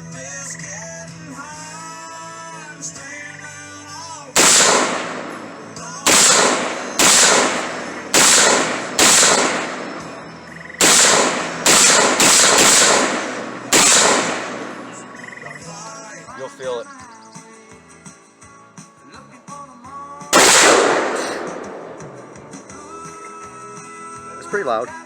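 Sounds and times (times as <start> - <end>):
rifle shots: 4.4 - 15.3, 20.4 - 22.8.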